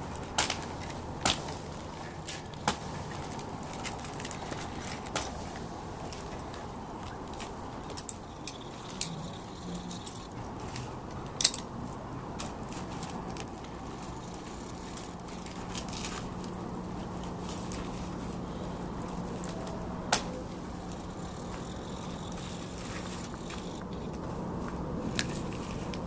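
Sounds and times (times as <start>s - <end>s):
faint steady hum: 0.0s - 26.0s
small metal gear clicking and jingling: 7.9s - 10.8s.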